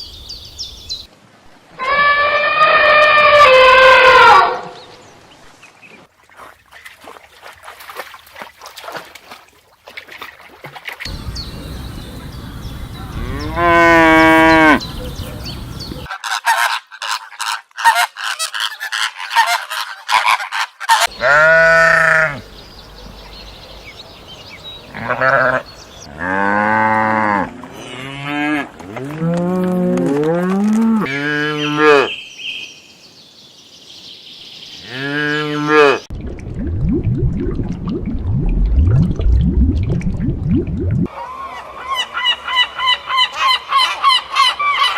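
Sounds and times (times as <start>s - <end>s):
noisy rumble: 11.1s - 16.1s, 36.1s - 41.1s
farm animal calls: 11.1s - 16.2s, 18.8s - 26.4s
cattle mooing: 13.0s - 14.9s, 21.2s - 22.5s, 24.9s - 32.1s.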